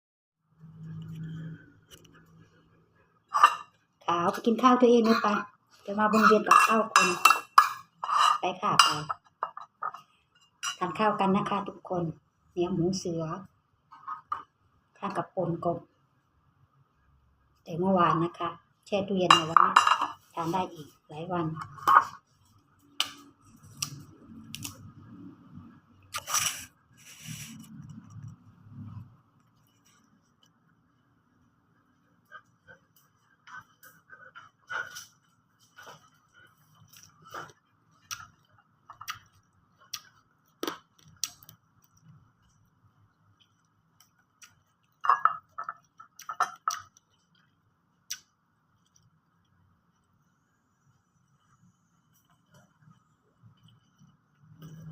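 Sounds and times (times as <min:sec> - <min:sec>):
utensils clinking against dishes: 0:06.1 - 0:09.6
short rustle or tear: 0:26.1 - 0:27.7.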